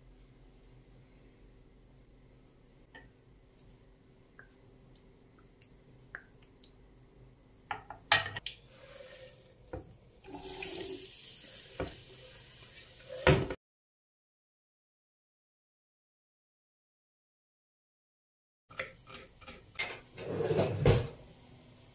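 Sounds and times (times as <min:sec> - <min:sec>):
dishes clicking and knocking: 0:07.7 - 0:08.4.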